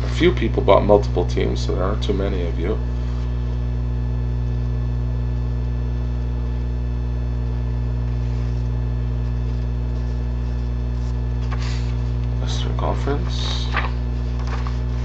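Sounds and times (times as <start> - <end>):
mains hum: 0.0 - 15.0.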